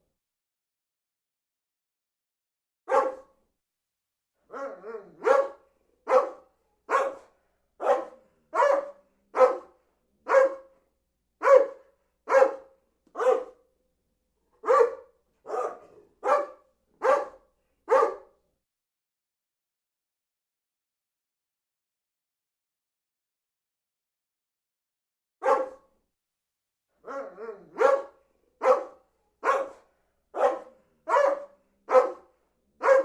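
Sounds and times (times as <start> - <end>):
dog barking: 2.9 - 3.4, 4.4 - 10.8, 11.4 - 13.7, 14.6 - 18.4, 25.4 - 26.0, 27.0 - 33.0.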